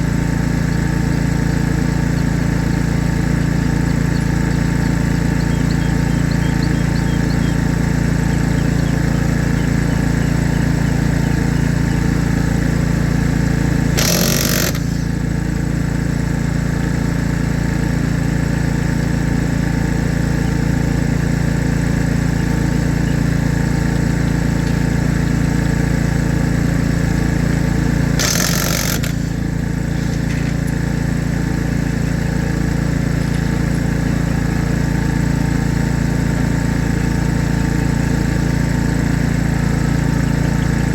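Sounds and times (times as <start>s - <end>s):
short noisy bursts: 0.0s - 17.8s, 22.2s - 35.9s
engine idling: 0.0s - 40.9s.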